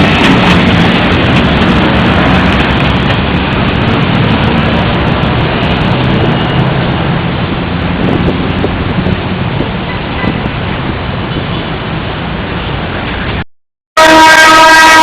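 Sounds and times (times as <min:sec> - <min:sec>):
diesel train engine rumble: 0:00.0 - 0:13.4.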